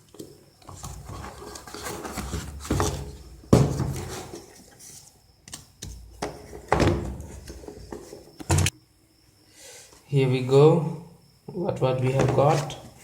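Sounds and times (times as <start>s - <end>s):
cardboard box knocks and rustles: 1.0s - 4.4s.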